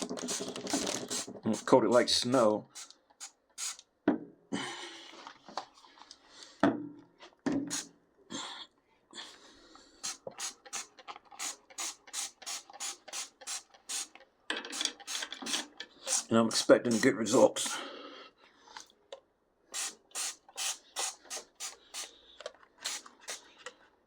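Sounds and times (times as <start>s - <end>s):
spray bottle hissing: 0.0s - 1.7s, 2.7s - 3.8s, 7.7s - 7.9s, 10.0s - 17.7s, 19.8s - 22.2s, 22.8s - 23.6s.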